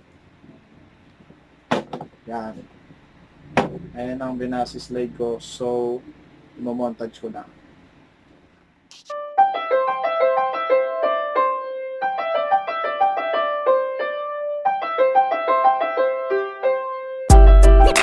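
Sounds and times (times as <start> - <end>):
light keyboard melody: 9.1 - 18.0.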